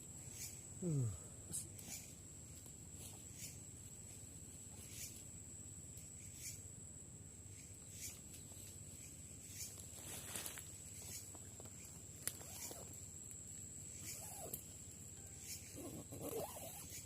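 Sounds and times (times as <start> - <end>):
faint rustling and scratching: 1.6 - 5.4, 8.0 - 13.0, 15.6 - 17.0.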